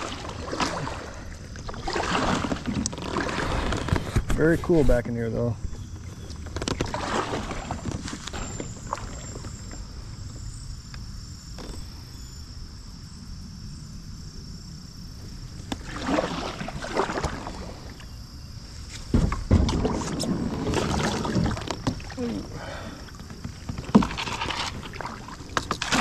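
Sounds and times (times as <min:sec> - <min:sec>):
paddle strokes splashing water: 0:00.0 - 0:10.6, 0:15.6 - 0:26.0
quiet water movement: 0:00.0 - 0:26.0.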